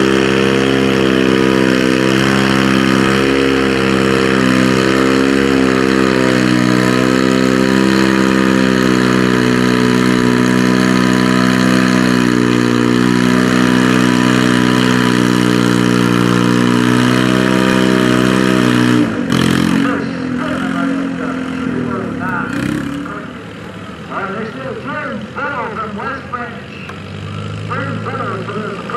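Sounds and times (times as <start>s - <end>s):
tractor diesel engine under load: 0.0s - 28.9s.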